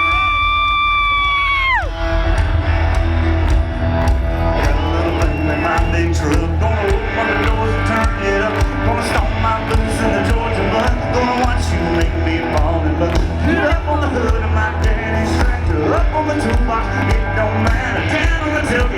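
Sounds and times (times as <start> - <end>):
live country-rock band: 0.0 - 18.9
steady drumbeat: 1.0 - 18.9.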